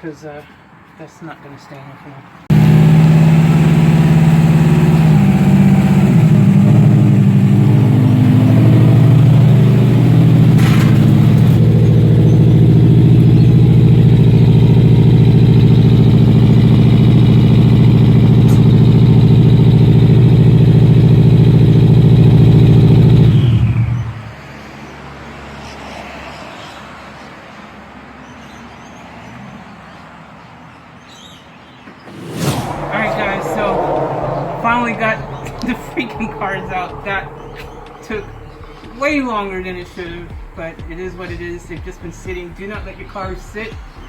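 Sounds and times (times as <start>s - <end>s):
car engine idling: 2.5s - 24.4s, 32.3s - 43.6s.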